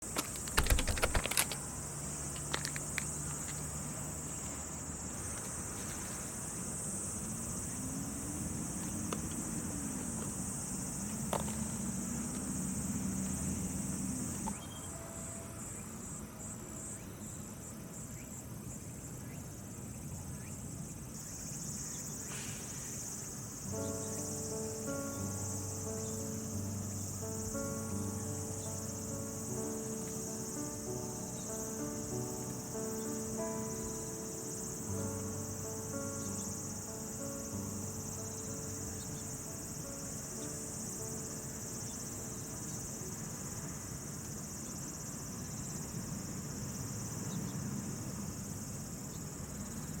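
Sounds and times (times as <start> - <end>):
insects trilling: 0.0 - 50.0
clicks: 0.2 - 1.6
soft sustained chords: 23.5 - 44.5.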